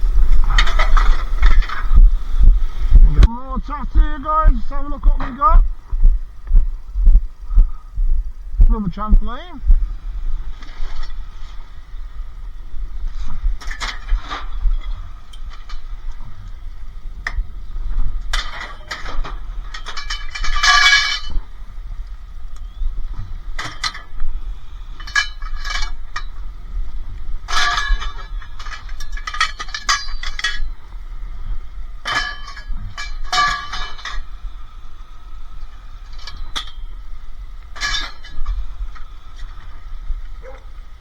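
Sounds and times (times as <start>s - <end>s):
scrap metal clanking: 0.2s - 2.0s, 10.5s - 12.3s, 12.9s - 40.6s.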